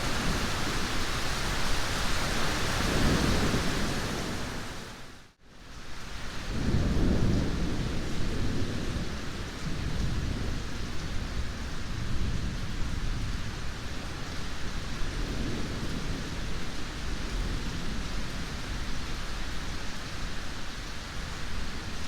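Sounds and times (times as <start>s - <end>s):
heavy rain hissing: 0.0s - 9.8s.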